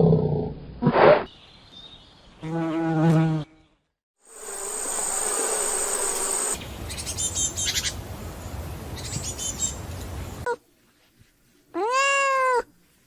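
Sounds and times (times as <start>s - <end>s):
insect buzzing: 4.2s - 8.0s.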